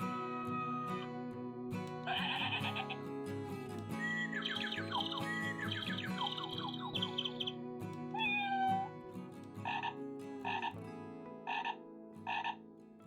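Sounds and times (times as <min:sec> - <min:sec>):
recorded frog croak: 0:09.6 - 0:10.8, 0:11.4 - 0:12.7.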